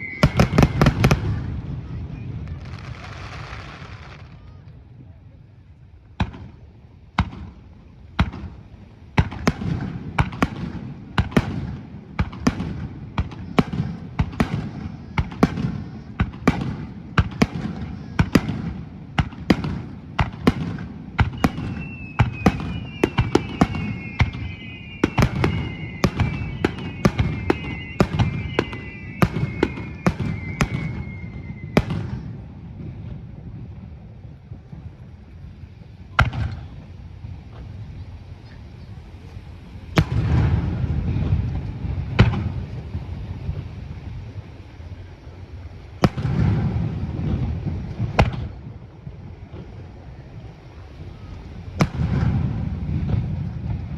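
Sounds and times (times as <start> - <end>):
fireworks bangs: 0.0 - 4.9, 6.1 - 53.9
fireworks whistles gliding down: 0.0 - 4.9, 6.2 - 53.9
low rumble: 29.2 - 53.9.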